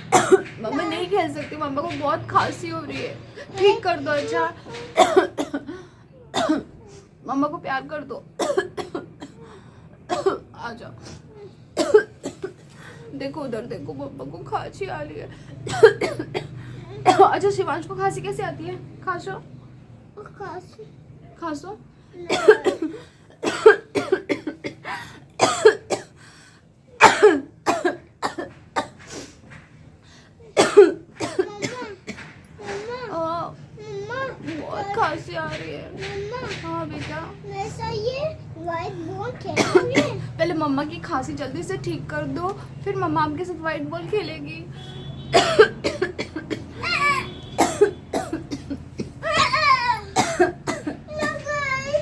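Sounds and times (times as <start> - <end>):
person coughing: 11.8 - 12.6, 22.3 - 26.2, 27.0 - 29.0, 30.6 - 31.9, 39.6 - 40.2, 45.3 - 46.8, 47.6 - 49.6, 50.2 - 51.4.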